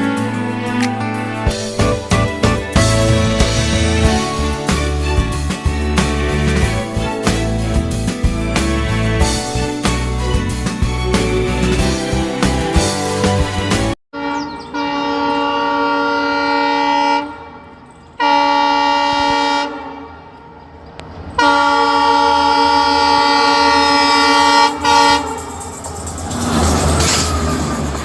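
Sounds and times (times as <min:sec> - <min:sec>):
passing train rumble: 0:00.0 - 0:28.0
train horn blasts: 0:14.2 - 0:20.7, 0:21.4 - 0:25.6.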